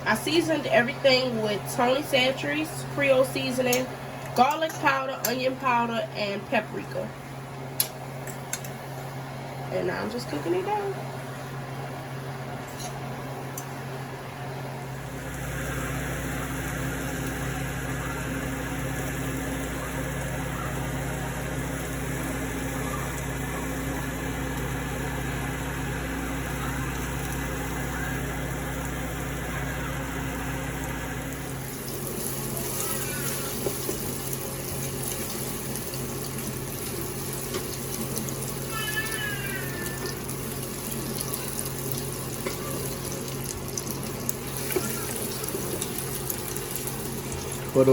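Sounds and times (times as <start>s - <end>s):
low electrical hum: 0.0s - 47.9s
meat sizzling in a skillet: 31.5s - 47.9s.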